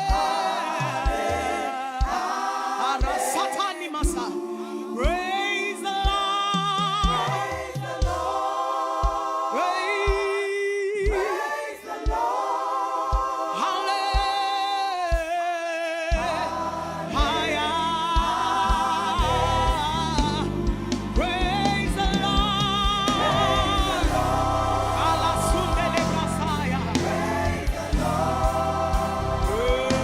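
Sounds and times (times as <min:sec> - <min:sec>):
kick drum beat: 0:00.0 - 0:04.4, 0:05.0 - 0:05.4, 0:06.0 - 0:10.4, 0:11.1 - 0:15.5, 0:16.1 - 0:30.0
voices singing with vibrato: 0:00.0 - 0:30.0
bass line: 0:16.2 - 0:30.0.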